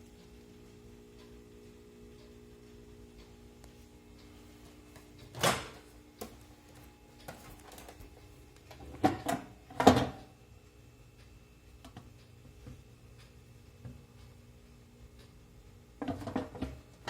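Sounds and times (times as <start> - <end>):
low steady hum: 0.0 - 17.0
microwave oven clunks: 5.3 - 5.9, 8.7 - 10.3.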